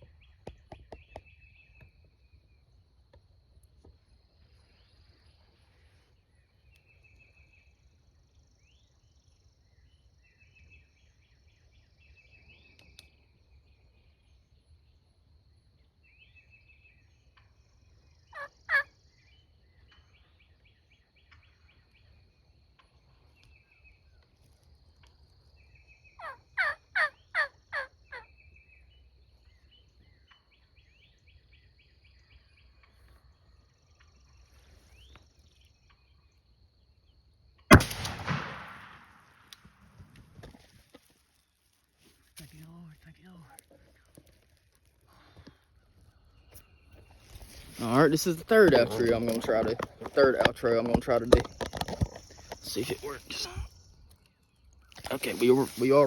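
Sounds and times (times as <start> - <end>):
wild turkey calling: 18.3 - 19.0, 26.0 - 28.4
insects buzzing: 46.1 - 56.0.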